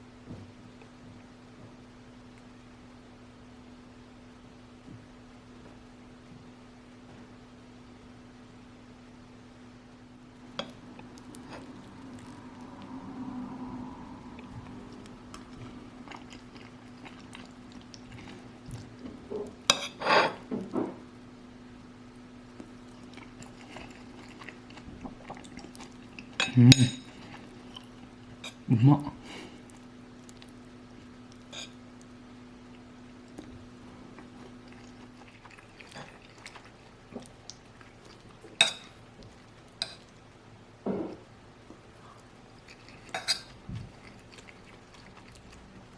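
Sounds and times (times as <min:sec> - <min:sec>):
low steady hum: 0:00.0 - 0:45.9
faint chewing: 0:10.5 - 0:20.5, 0:21.8 - 0:40.4, 0:41.6 - 0:45.9
spoon scraping plate: 0:19.7 - 0:20.4, 0:31.5 - 0:31.8
spoon clinking against plate: 0:31.5 - 0:31.8.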